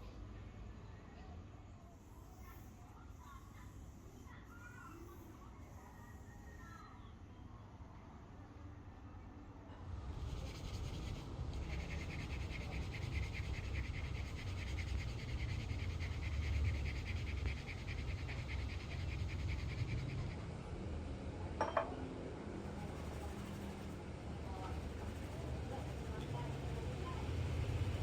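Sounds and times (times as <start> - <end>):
fast scraping strokes: 10.2 - 20.4.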